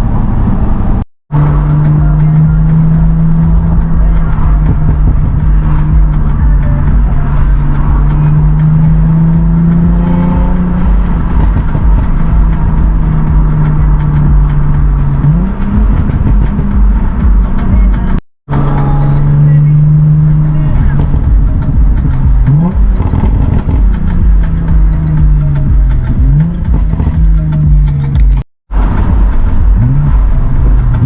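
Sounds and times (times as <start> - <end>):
car engine exhaust revving: 0.0 - 31.0.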